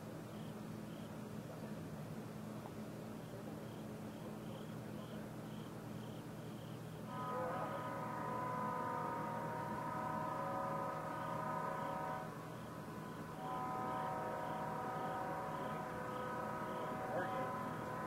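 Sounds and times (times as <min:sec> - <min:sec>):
locomotive air horn blasts: 0:07.1 - 0:18.0.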